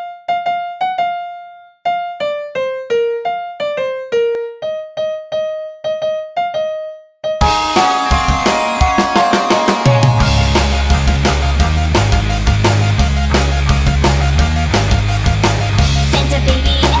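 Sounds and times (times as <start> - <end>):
electric keyboard melody: 7.4 - 15.3
band with drums and guitars: 7.4 - 17.0.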